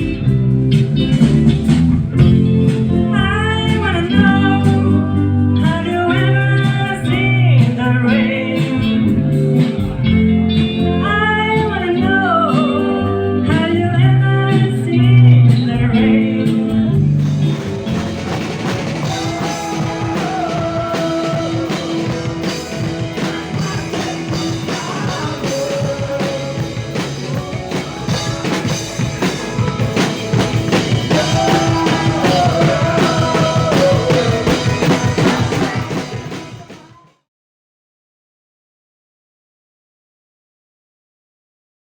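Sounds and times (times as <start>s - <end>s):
drums and cymbals: 0.0s - 3.8s, 17.0s - 37.1s
blues-rock song with guitar: 0.0s - 36.8s.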